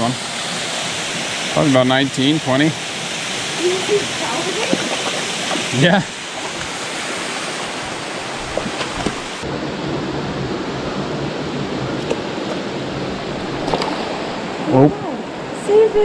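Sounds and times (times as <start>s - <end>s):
waterfall pouring into pool: 0.0s - 7.4s.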